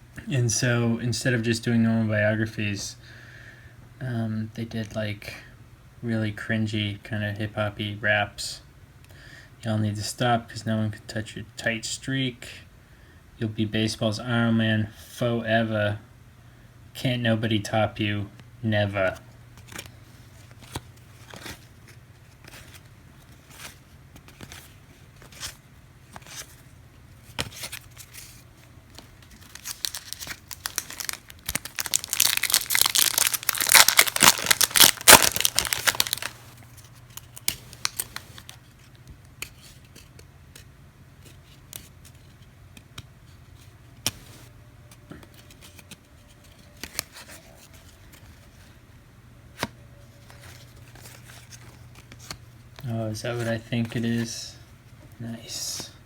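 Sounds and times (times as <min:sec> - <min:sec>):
wrapper tearing and crinkling: 0:29.0 - 0:38.6.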